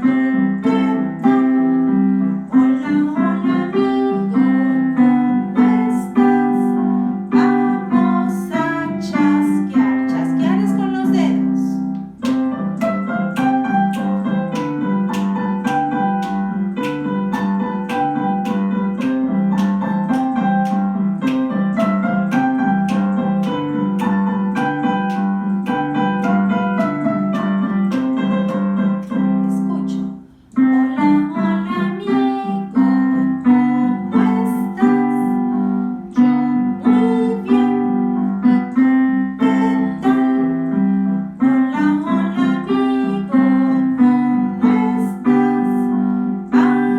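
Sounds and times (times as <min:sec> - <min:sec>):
keyboard piano children's song: 0:00.0 - 0:46.9.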